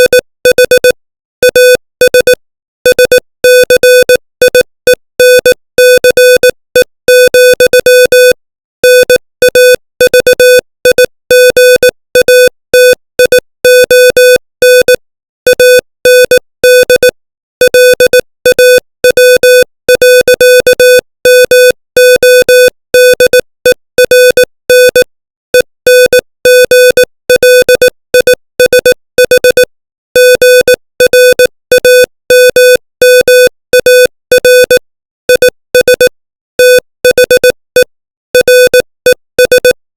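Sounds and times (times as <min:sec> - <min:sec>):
morse code beeps: 0:00.0 - 0:39.8.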